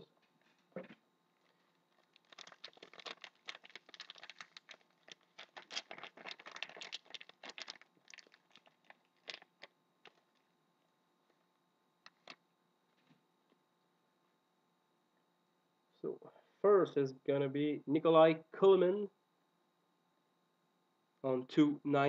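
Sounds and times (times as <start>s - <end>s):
packaging crinkling: 1.4s - 10.4s, 12.0s - 12.4s.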